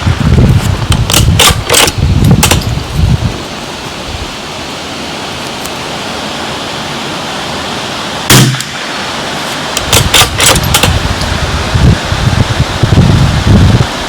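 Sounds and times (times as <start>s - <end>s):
wind buffeting microphone: 0.0s - 4.6s, 9.6s - 14.0s
wind hiss: 0.0s - 14.0s
rifle shot: 1.1s - 2.6s, 8.3s - 8.9s, 9.8s - 11.0s.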